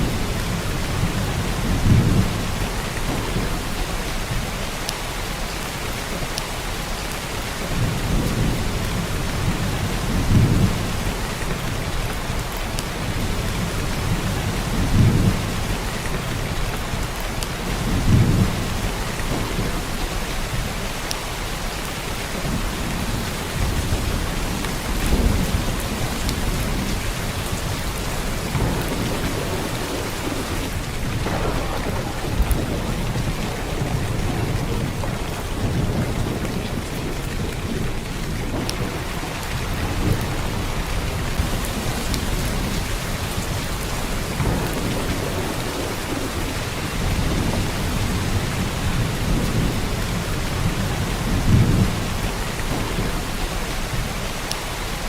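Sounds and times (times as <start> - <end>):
heavy rain hissing: 0.0 - 55.0.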